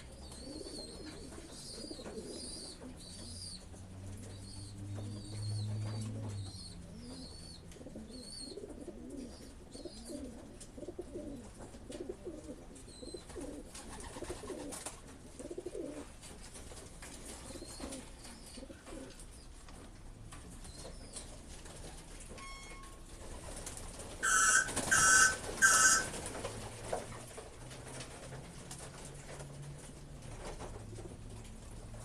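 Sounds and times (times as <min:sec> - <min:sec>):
pigeons cooing: 0:00.0 - 0:16.2, 0:17.2 - 0:19.2, 0:24.2 - 0:26.5
short electronic beeps: 0:22.4 - 0:23.0.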